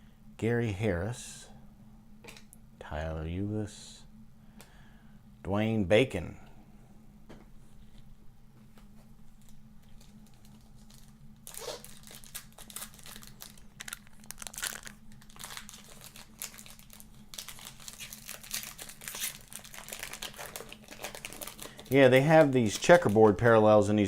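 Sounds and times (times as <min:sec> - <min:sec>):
foil wrapper crinkling and tearing: 0:09.4 - 0:23.6.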